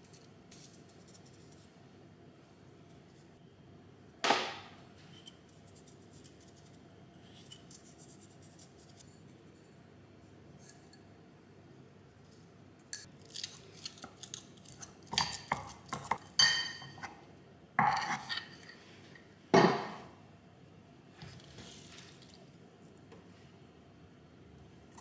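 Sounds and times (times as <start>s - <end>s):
dishes and glassware clinking: 15.1s - 17.1s, 19.5s - 20.1s.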